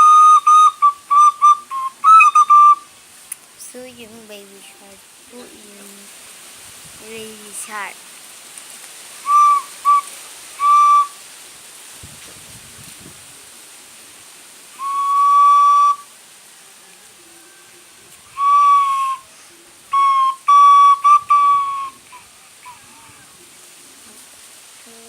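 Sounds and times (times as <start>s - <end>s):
whistle toots: 0.0s - 2.9s, 9.3s - 11.2s, 14.8s - 16.1s, 18.3s - 19.3s, 19.9s - 22.1s.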